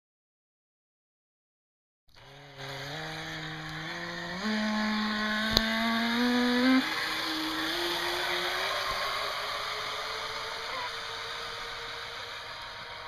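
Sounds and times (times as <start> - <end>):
electric motor whining: 2.1 - 13.0
sharp click: 5.5 - 5.8.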